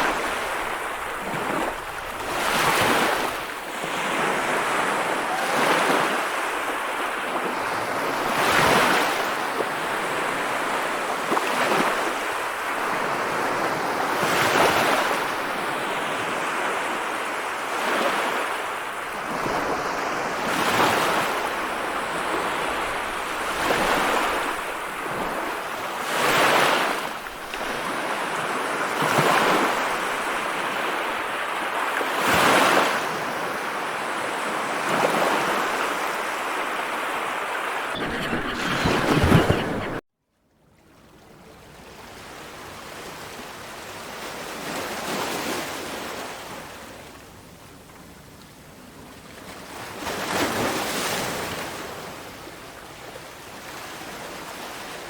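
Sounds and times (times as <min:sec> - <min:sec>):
ocean waves breaking on shore: 0:00.0 - 0:40.0.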